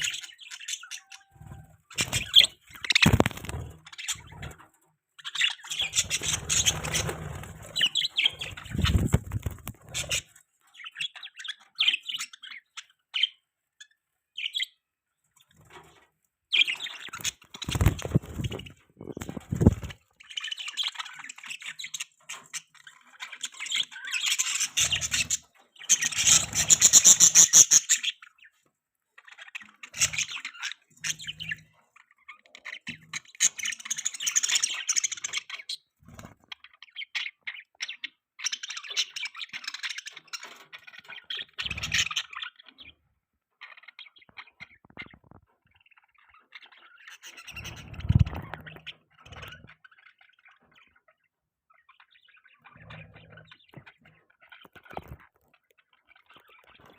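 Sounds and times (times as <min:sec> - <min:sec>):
budgerigar chirping and warbling: 0:00.0 - 0:04.5, 0:05.3 - 0:13.4, 0:20.4 - 0:28.5.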